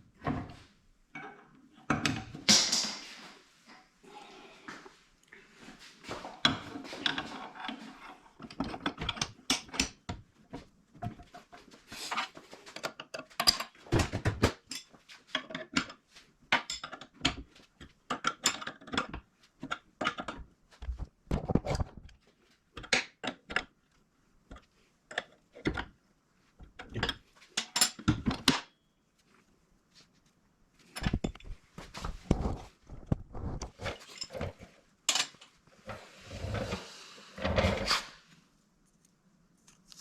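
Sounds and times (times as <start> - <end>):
metal parts and tools clinking: 33.7 - 35.6.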